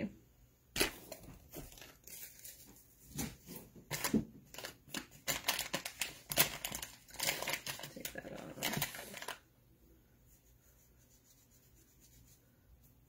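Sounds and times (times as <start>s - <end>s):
plastic packaging rustling: 0.8s - 9.4s.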